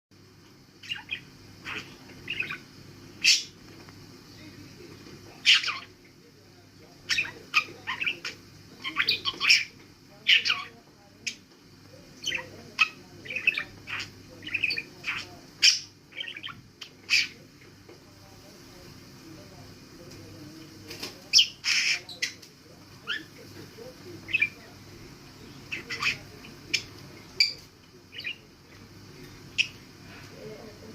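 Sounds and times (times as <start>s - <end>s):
budgerigar calls: 0.8s - 3.6s, 5.4s - 5.9s, 7.1s - 10.7s, 21.3s - 22.4s, 25.7s - 28.4s
budgerigar chirping: 21.3s - 22.4s, 25.7s - 28.4s.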